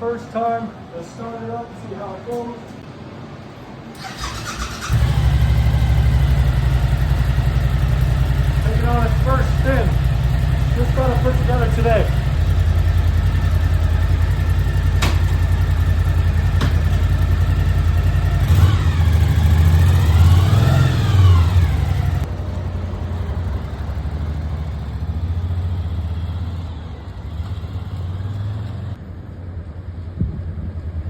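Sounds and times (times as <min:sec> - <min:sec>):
motorcycle engine idling and revving: 0:04.0 - 0:31.0.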